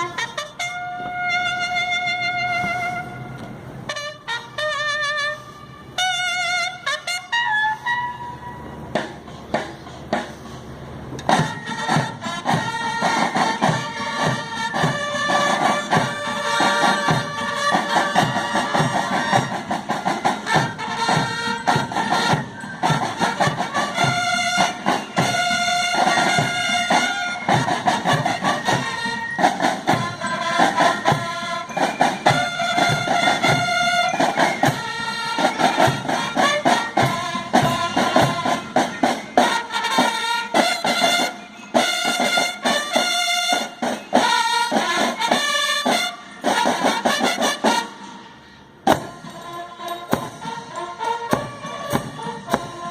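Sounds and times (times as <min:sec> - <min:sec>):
band playing a tune: 0:00.0 - 0:52.9
drum hits: 0:48.9 - 0:49.4, 0:50.1 - 0:50.6.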